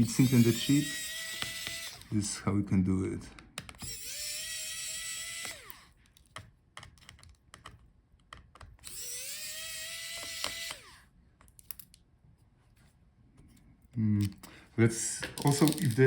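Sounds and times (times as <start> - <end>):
electric screwdriver motor whine: 0.0 - 2.2, 3.8 - 5.9, 8.8 - 11.0
small clicks of screws and tool: 1.1 - 2.1, 3.4 - 4.2, 4.8 - 12.0.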